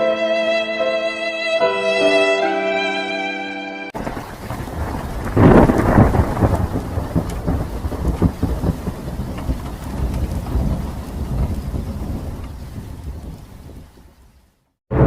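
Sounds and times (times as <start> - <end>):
rolling thunder: 4.0 - 15.0
steady rain: 4.0 - 15.0
thunderclap: 4.0 - 15.0.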